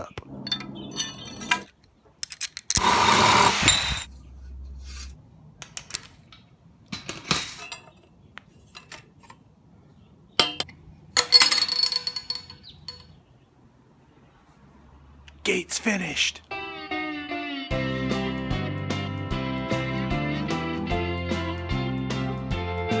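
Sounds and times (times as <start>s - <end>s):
metal hardware clinking and scraping: 0.4s - 2.9s, 4.9s - 9.5s, 10.4s - 13.2s
loud rasping burst: 2.8s - 4.1s.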